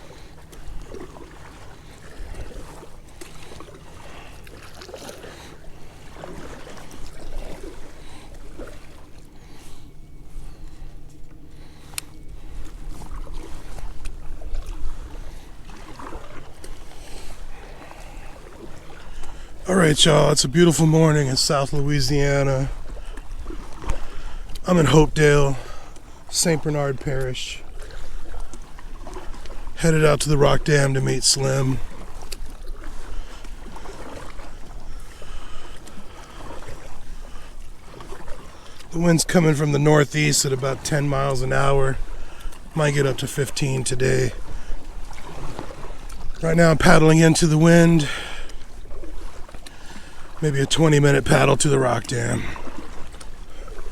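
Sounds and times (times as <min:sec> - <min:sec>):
wind buffeting microphone: 0:00.0 - 0:03.0, 0:06.1 - 0:34.0
paddle splashes: 0:00.0 - 0:53.9.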